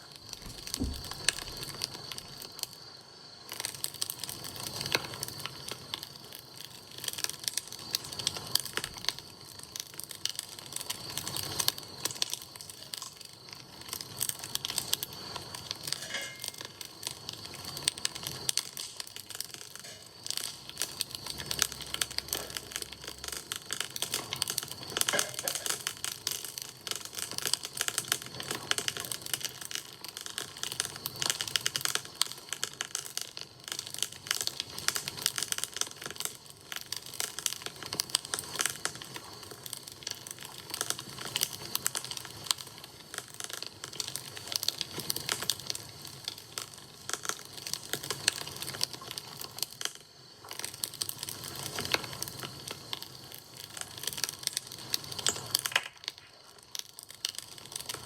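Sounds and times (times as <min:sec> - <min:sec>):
campfire crackling: 0:00.0 - 0:58.0.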